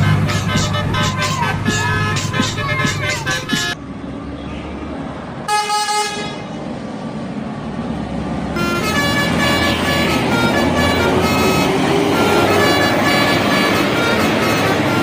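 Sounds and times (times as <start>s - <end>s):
bus horn playing changing tones: 0.0s - 3.8s, 5.5s - 6.5s, 8.6s - 15.0s
passing vehicle: 0.0s - 15.0s.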